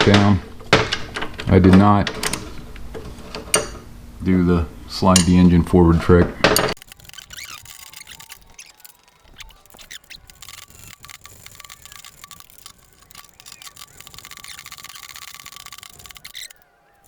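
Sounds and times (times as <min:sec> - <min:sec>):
faint squeaks: 0:06.8 - 0:17.0
hand tools clicking and scraping: 0:06.8 - 0:17.0.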